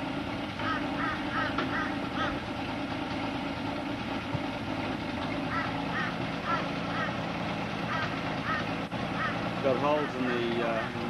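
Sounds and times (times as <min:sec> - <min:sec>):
car engine idling loudly: 0:00.0 - 0:11.0
short high animal calls: 0:05.5 - 0:07.2, 0:07.9 - 0:09.5.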